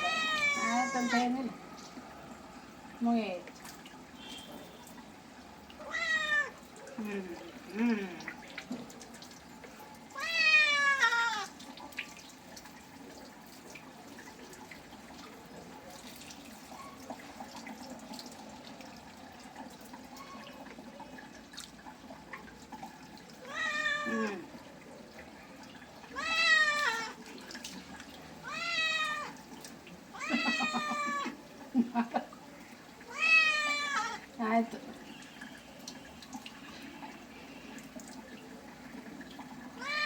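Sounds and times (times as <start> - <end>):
cat meowing: 0.0 - 1.4, 5.8 - 6.6, 10.2 - 11.5, 23.4 - 24.5, 26.1 - 27.2, 28.4 - 29.4, 30.2 - 31.4, 33.1 - 34.3, 39.8 - 40.0.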